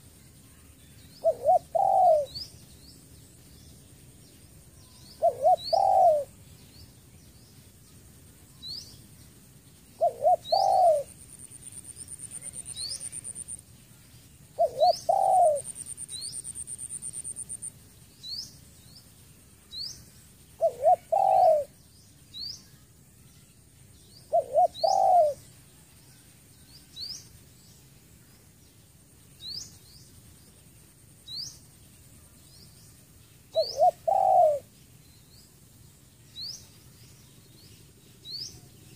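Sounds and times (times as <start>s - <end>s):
dove cooing: 1.2s - 2.4s, 5.2s - 6.3s, 10.0s - 11.1s, 14.6s - 15.7s, 20.6s - 21.7s, 24.3s - 25.4s, 33.5s - 34.7s.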